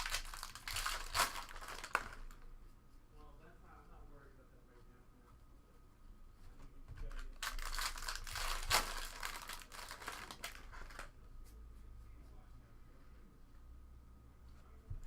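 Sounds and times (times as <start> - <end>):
foil wrapper tearing and crinkling: 0.0 - 2.4, 7.4 - 11.1.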